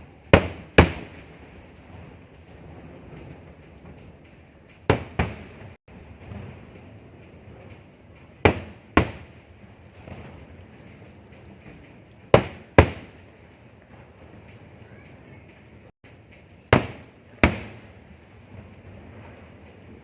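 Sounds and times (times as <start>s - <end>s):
fireworks loud bangs: 0.0s - 20.0s.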